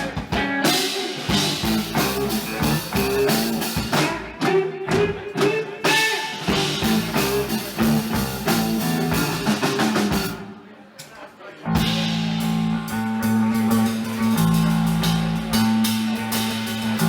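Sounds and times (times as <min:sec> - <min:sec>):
blues-rock band playing: 0:00.0 - 0:05.1, 0:05.8 - 0:10.4, 0:11.8 - 0:17.0
electric guitar: 0:00.0 - 0:10.4
drum kit: 0:00.0 - 0:10.6, 0:11.7 - 0:17.0.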